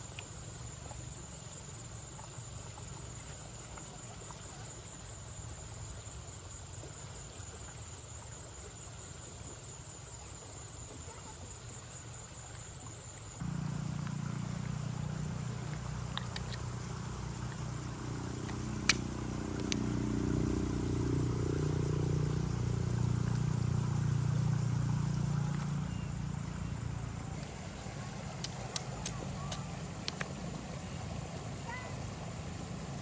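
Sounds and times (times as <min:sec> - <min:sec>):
vehicle engine running: 0:13.4 - 0:33.0.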